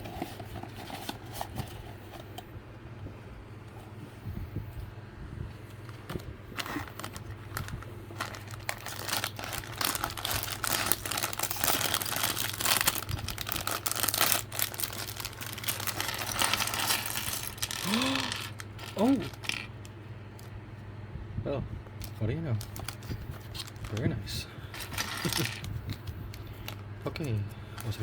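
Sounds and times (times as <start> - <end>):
steady low hum: 0.0 - 28.0
plastic packaging crinkling: 6.0 - 20.5, 22.0 - 28.0.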